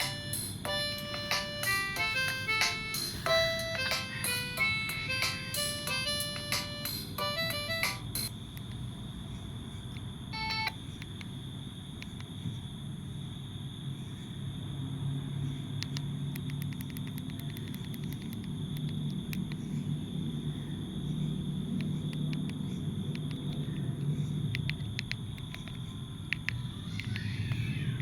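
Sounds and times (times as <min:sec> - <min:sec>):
faint high whine: 0:00.0 - 0:14.4
steady low hum: 0:00.0 - 0:28.0
light sharp clicks: 0:15.8 - 0:19.7.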